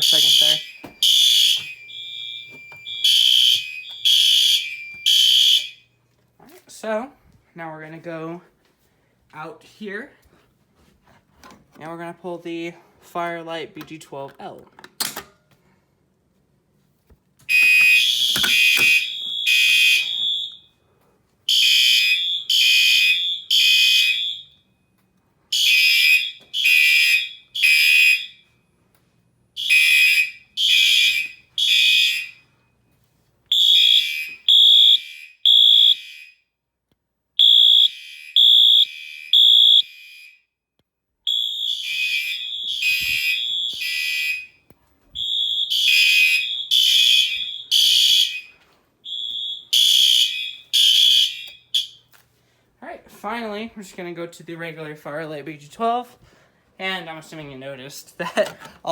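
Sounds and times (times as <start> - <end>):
fire alarm horn blasts: 0.0 - 6.0, 17.5 - 20.8, 21.5 - 24.9, 25.5 - 28.7, 29.5 - 32.7, 33.5 - 36.6, 37.4 - 40.6, 41.2 - 52.1.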